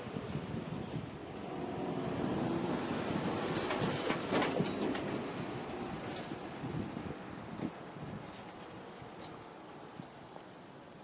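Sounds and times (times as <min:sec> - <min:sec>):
electric train wheels rumbling: 0:00.0 - 0:07.9.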